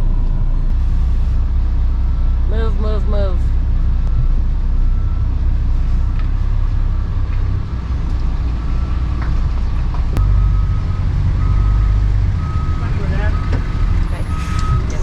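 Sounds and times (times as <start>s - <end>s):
diesel engine running: 0.0s - 15.0s
reversing alarm beeping: 4.0s - 6.2s, 10.2s - 15.0s.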